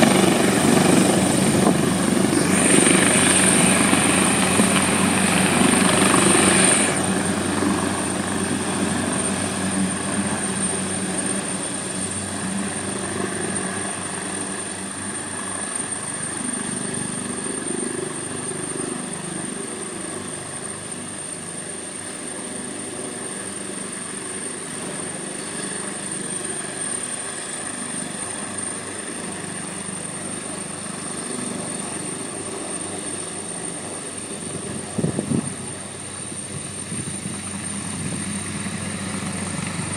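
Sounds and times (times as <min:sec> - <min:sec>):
helicopter engine and rotor: 0:00.0 - 0:39.9.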